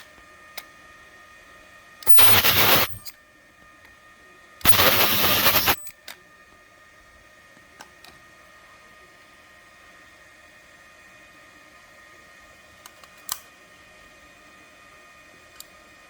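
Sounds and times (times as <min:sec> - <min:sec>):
ultrasonic welder buzzing: 0:02.0 - 0:03.1, 0:04.6 - 0:05.9.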